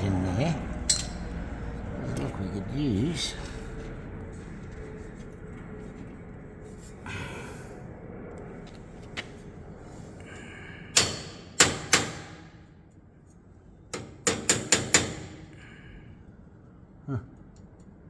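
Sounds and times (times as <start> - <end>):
hammer striking metal punch: 11.0 - 12.6, 14.0 - 15.4.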